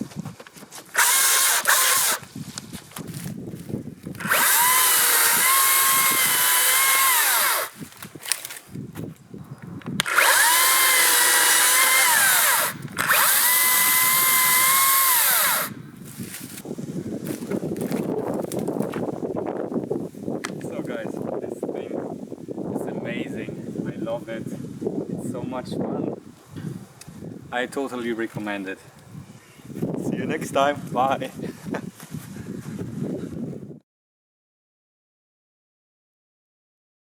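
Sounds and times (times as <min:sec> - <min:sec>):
electric chainsaw motor whine: 0:00.9 - 0:02.3, 0:04.2 - 0:08.6, 0:10.0 - 0:15.8.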